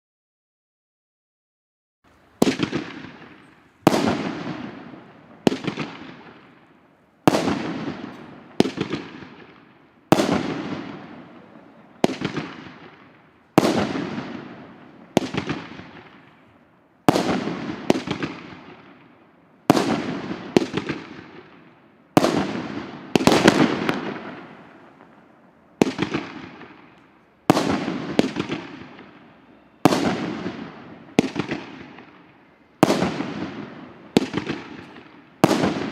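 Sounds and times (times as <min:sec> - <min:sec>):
firework bangs: 0:02.2 - 0:35.9
firework shell crackling: 0:19.7 - 0:33.2.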